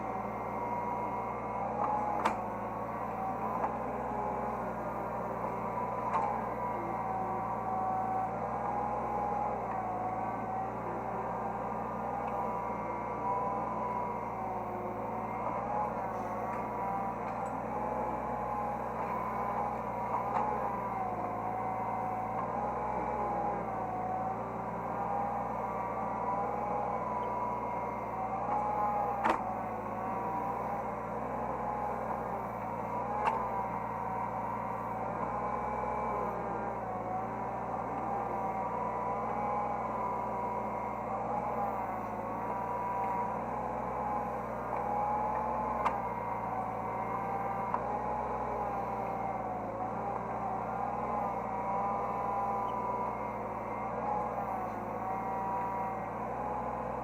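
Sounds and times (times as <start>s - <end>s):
excavator engine drone: 0.0s - 57.0s
hydraulic whine: 0.0s - 57.0s.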